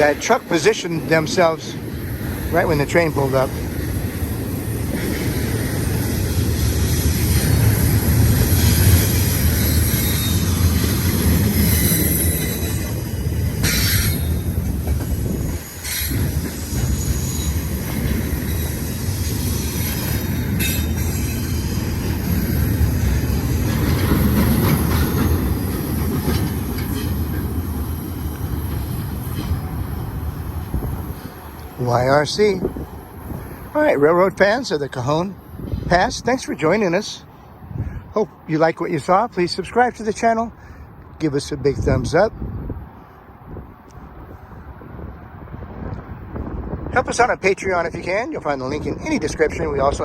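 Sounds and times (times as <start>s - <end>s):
train wheels rumbling on rail: 0.0s - 50.0s
high-pitched wheel squeal: 8.6s - 13.0s, 13.6s - 15.2s, 15.8s - 21.4s.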